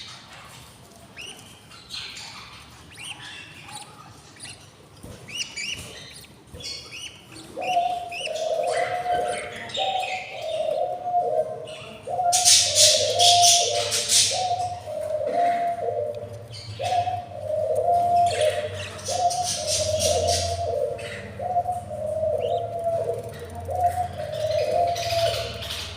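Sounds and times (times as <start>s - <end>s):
budgies chirping: 0.0s - 25.9s
harsh bird chattering: 1.1s - 25.9s
low cooing: 7.4s - 25.9s.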